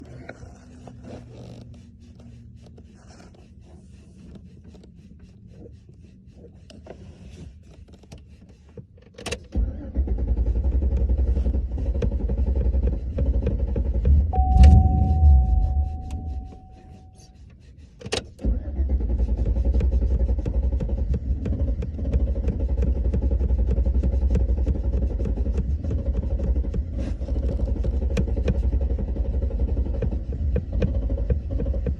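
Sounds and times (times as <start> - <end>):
truck engine cranking: 9.2 - 17.0, 18.2 - 23.7
ignition click: 10.6 - 17.3
steady beep: 14.4 - 17.2.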